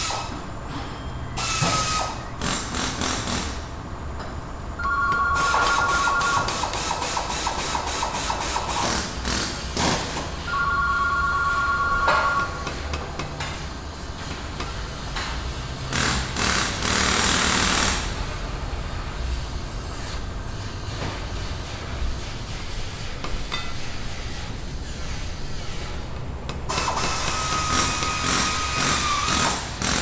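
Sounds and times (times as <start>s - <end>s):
low workshop hum: 0.0s - 30.0s
telephone ringing: 4.8s - 6.8s, 10.5s - 12.8s.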